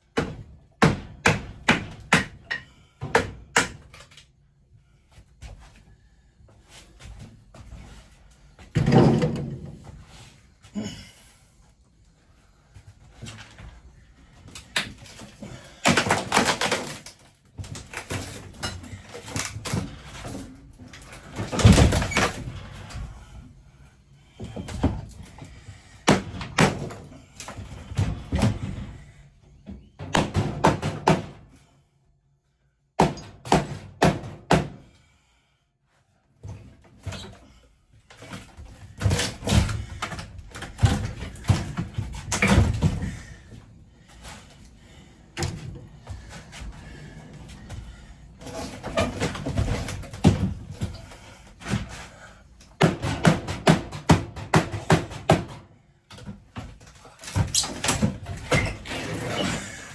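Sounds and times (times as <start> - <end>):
cabinetry knocking and scraping: 8.7 - 9.8.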